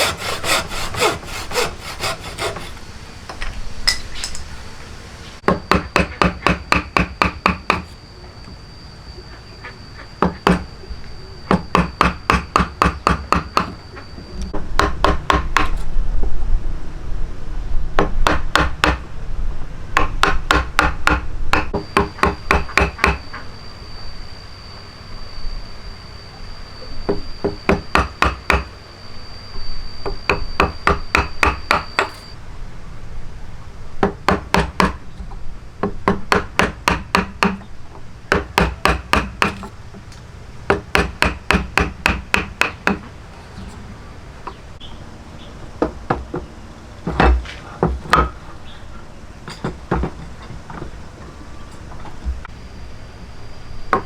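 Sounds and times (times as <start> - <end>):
thin steady high tone: 7.6 - 12.2, 21.8 - 33.2, 46.6 - 54.0.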